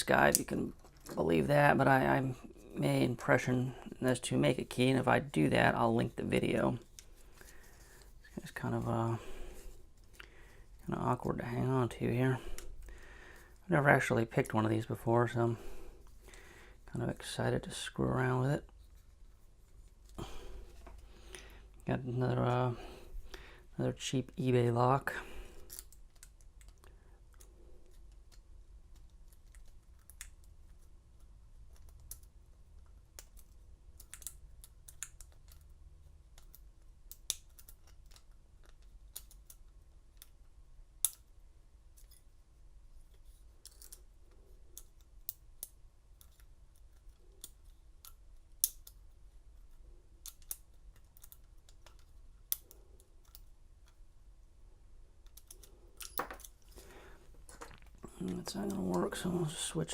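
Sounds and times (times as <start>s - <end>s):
faint steady hum: 0.0s - 59.9s
lock pick clicking and scraping: 36.4s - 40.4s, 43.2s - 54.0s, 55.2s - 56.8s.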